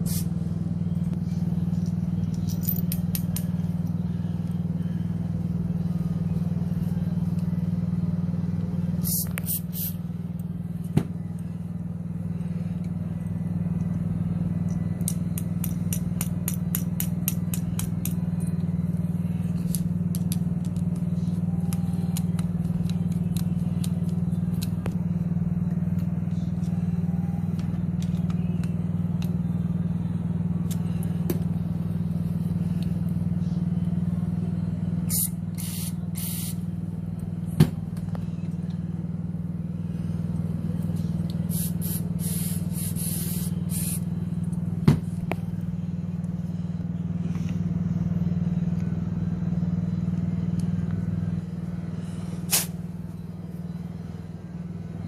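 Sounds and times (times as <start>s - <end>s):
spray hissing: 0.0s - 0.3s, 9.0s - 10.0s, 35.1s - 36.6s, 41.5s - 44.0s, 52.5s - 52.8s
motor humming: 0.0s - 55.0s.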